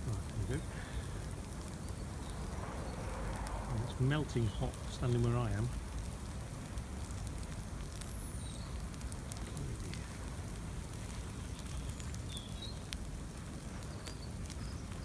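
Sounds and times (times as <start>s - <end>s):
fire crackling and popping: 0.0s - 15.0s.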